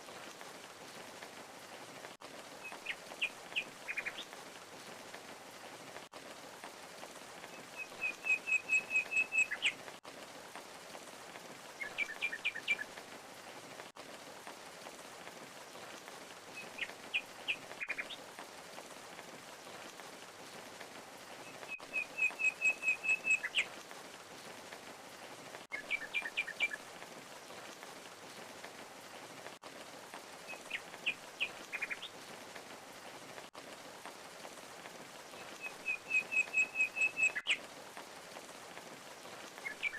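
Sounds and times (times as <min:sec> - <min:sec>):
songbirds chirping: 0:15.5 - 0:29.4, 0:35.2 - 0:37.6.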